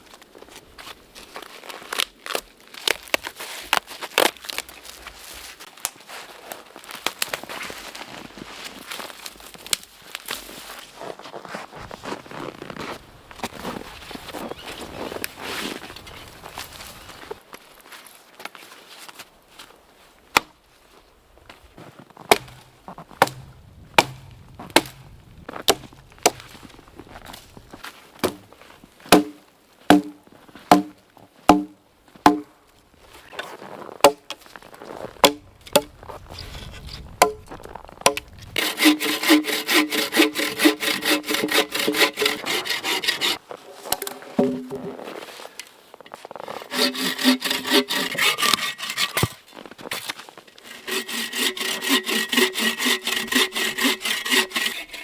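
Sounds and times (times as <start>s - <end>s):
sharp strikes on wood: 22.3s - 26.6s, 29.1s - 32.5s, 35.2s - 35.9s, 43.9s - 44.9s
saw cutting wood: 38.6s - 43.4s, 46.5s - 49.4s, 50.6s - 55.0s.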